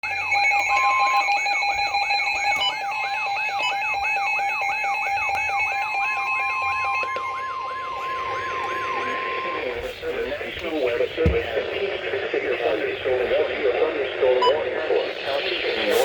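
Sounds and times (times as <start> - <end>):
falling alarm chirp: 0.0 - 9.7
high beeping alarm tones: 0.0 - 9.8.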